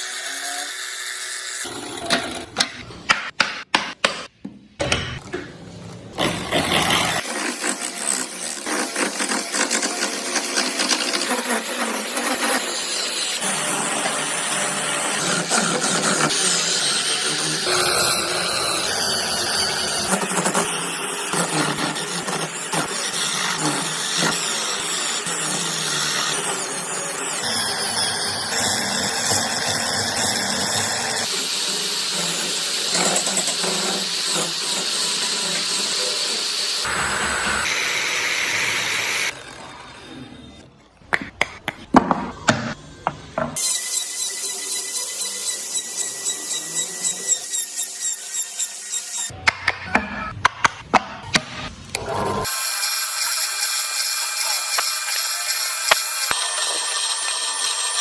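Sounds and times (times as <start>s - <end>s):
power tools whirring on wood: 6.2s - 40.7s, 52.4s - 58.0s.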